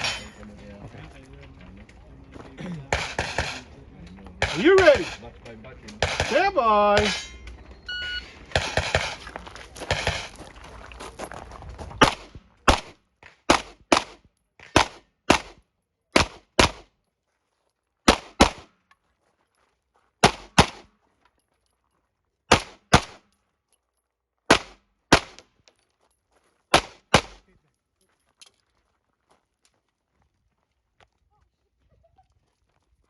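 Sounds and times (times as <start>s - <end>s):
handgun shots in pairs: 2.9s - 3.7s, 4.4s - 5.2s, 5.9s - 7.4s, 8.5s - 9.2s, 12.0s - 16.9s, 18.0s - 18.8s, 20.2s - 20.9s, 22.5s - 23.3s, 24.5s - 25.5s, 26.7s - 27.5s.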